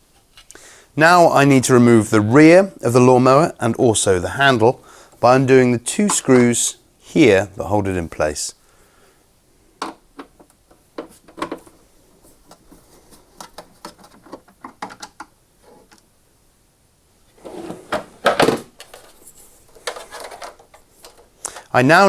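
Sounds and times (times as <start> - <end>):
plastic parts clattering and scraping: 9.8 - 16.0, 17.4 - 21.9
plastic parts clicking and knocking: 9.8 - 16.1, 17.9 - 21.8.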